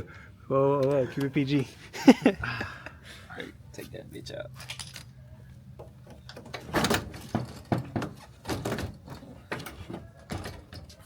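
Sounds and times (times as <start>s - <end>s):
metal knocks and clunks: 5.8s - 11.0s.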